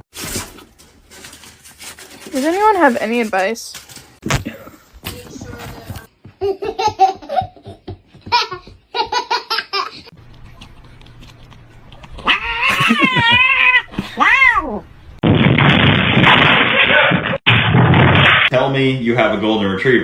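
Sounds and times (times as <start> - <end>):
cat yowling: 12.2 - 14.8
person laughing: 12.3 - 14.2.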